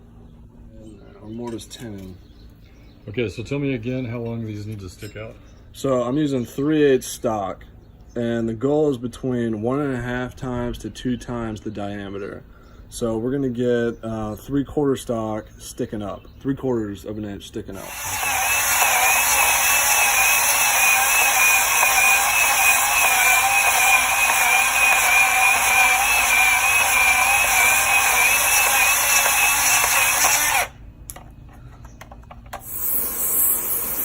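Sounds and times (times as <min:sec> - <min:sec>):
power tool cutting steel rod: 0:17.8 - 0:30.8, 0:32.6 - 0:34.0.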